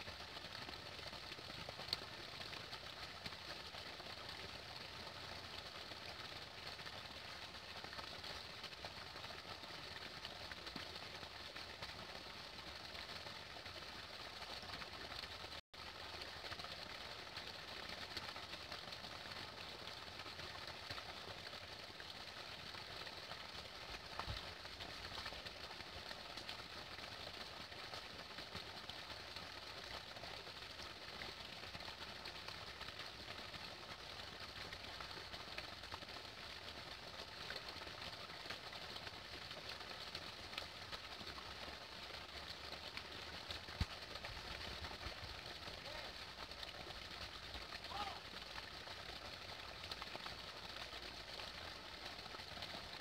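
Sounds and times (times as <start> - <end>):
faint outdoor ambient hiss: 0.0 - 2.7.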